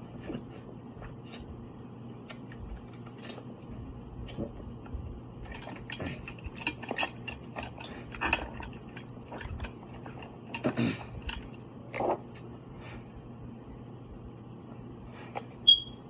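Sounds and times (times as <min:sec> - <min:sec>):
chewing: 0:05.5 - 0:12.6.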